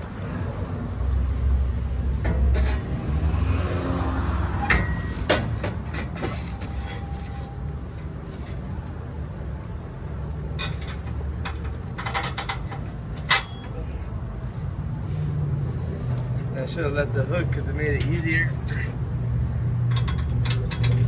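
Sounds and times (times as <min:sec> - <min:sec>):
tools and parts clicking: 0:10.6 - 0:13.8, 0:19.9 - 0:21.0.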